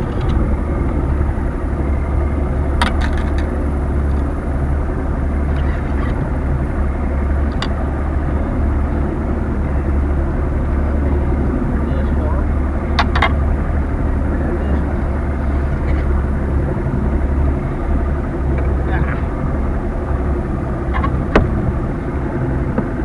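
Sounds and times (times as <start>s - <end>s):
vehicle engine droning: 0.0s - 23.0s.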